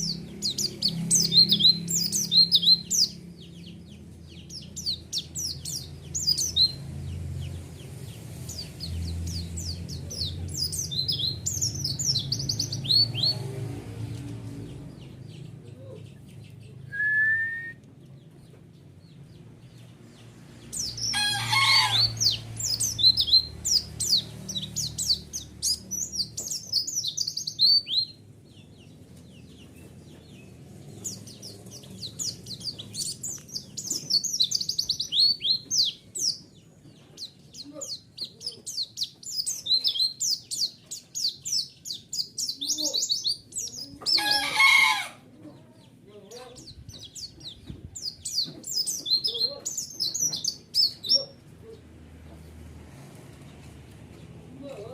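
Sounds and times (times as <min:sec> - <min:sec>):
white-eye bird chirps: 0:00.0 - 0:06.8, 0:20.7 - 0:28.2.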